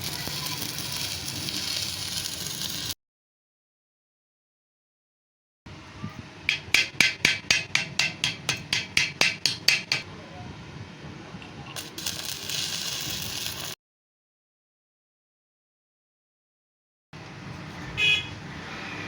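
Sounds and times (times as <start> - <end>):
arc welding crackle: 0.0 - 3.0, 11.8 - 13.8
hammer striking metal: 6.5 - 10.1.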